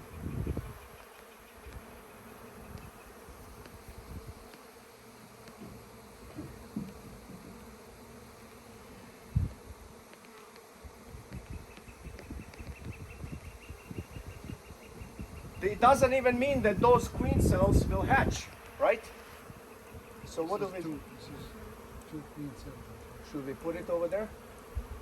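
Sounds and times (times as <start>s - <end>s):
honeybees buzzing: 0.0s - 25.0s.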